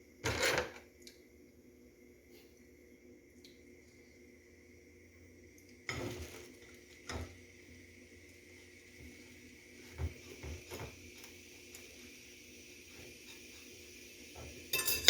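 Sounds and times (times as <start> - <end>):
faint steady hum: 0.0 - 15.0
kitchenware clattering: 14.7 - 15.0.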